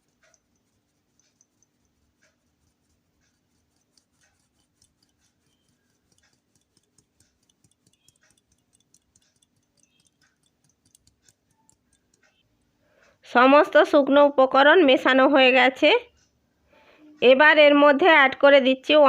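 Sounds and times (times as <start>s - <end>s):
faint ticking: 0.0s - 13.3s
sieve clicking: 3.1s - 12.5s.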